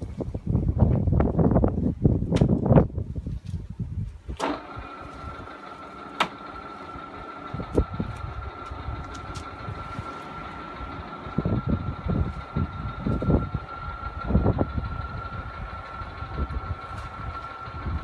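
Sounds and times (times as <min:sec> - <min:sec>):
pillar drill running with whine: 0:04.4 - 0:18.0.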